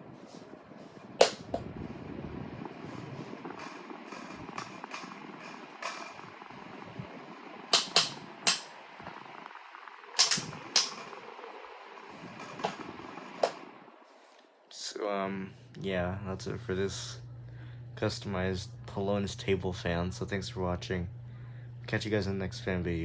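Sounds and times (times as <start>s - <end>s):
table fan running: 0.0s - 23.0s
badge rattling against fan grille: 1.0s - 1.7s, 3.0s - 6.6s, 7.7s - 8.8s, 10.2s - 11.4s, 12.0s - 13.7s.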